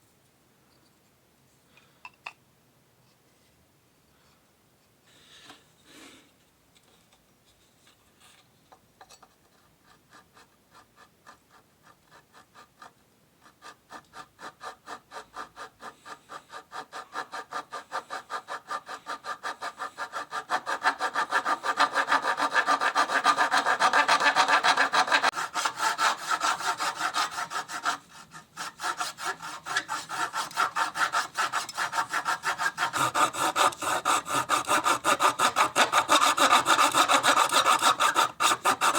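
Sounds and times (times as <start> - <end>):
hand saw cutting wood: 9.8 - 38.9.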